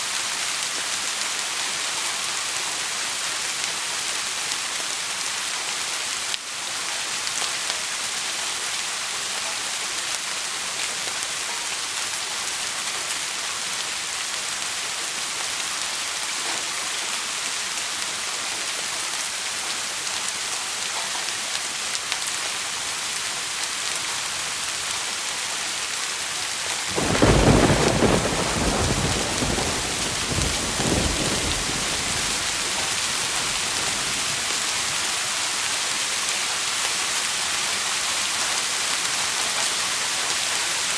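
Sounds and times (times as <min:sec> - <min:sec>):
steady rain: 0:00.0 - 0:40.9
thunderclap rumbling: 0:26.9 - 0:34.6.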